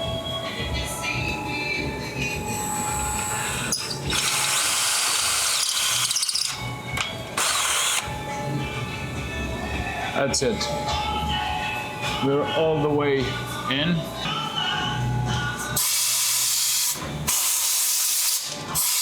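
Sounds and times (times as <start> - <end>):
power drill boring into metal: 3.1 - 6.6, 7.4 - 8.0.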